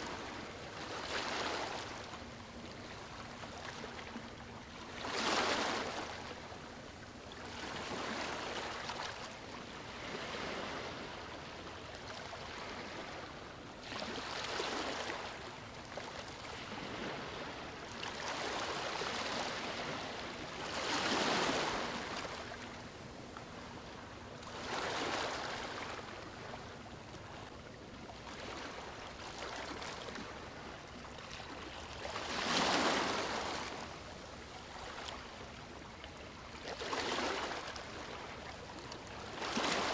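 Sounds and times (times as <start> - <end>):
ocean waves breaking: 18.3 - 22.8.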